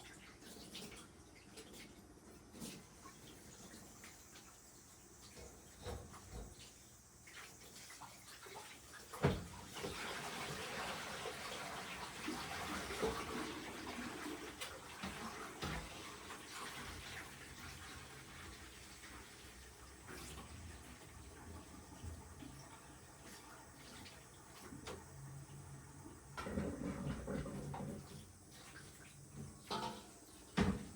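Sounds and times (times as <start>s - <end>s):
tap water running into sink: 2.6s - 30.9s
dishes clinking: 29.6s - 30.9s.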